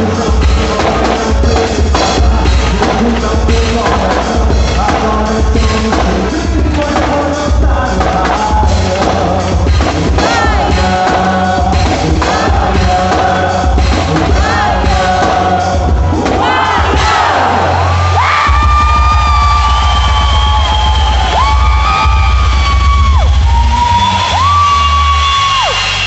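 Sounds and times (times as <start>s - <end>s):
dance music with singing: 0.0s - 26.0s
heavy bass beat: 0.0s - 26.0s
crowd voices: 10.2s - 26.0s.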